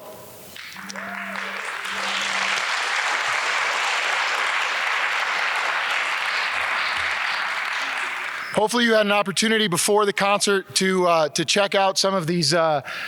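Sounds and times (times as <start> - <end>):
audience applauding: 0.6 - 8.6.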